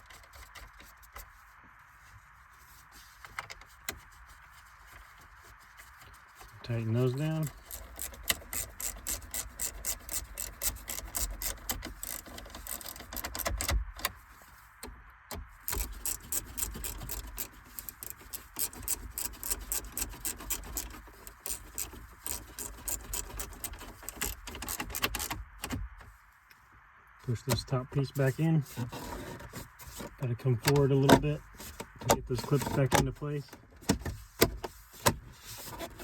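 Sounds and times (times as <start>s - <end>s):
hand ratchet clicking rapidly: 7.4s - 13.7s, 15.7s - 25.3s.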